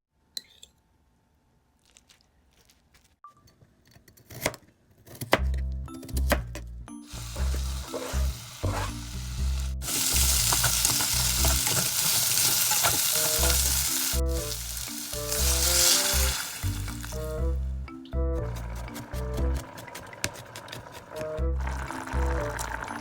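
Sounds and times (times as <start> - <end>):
food sizzling in a pan: 7.1 - 17.3.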